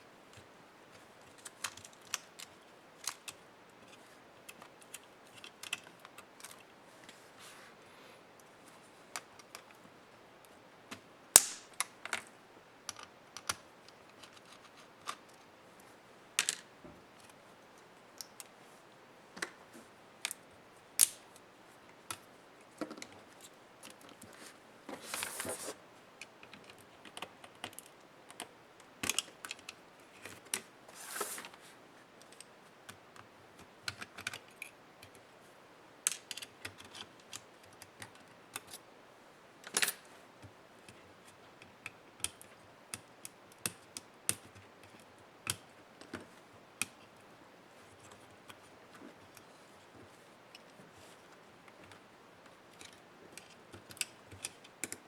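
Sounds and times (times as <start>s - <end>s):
short scraping rustles: 24.9s - 25.8s
light clicks and taps of tools: 47.8s - 55.0s.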